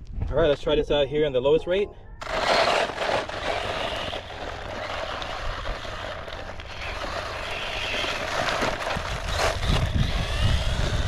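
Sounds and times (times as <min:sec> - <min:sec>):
rc truck motor and tyres hiss: 0:02.2 - 0:11.0.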